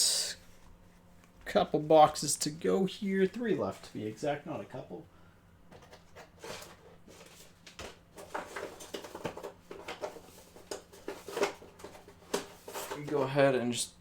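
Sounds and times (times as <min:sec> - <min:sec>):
cards and packaging being handled: 0:05.7 - 0:13.4.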